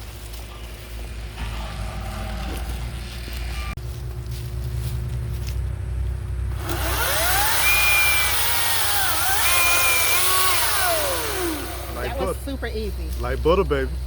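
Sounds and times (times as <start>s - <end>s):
low engine rumble: 0.0s - 14.0s
chainsaw cutting wood: 6.5s - 12.4s.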